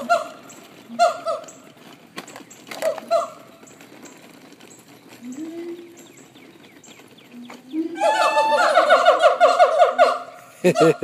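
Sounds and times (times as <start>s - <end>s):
monkeys calling: 0.0s - 1.6s, 2.7s - 3.4s, 7.4s - 11.0s.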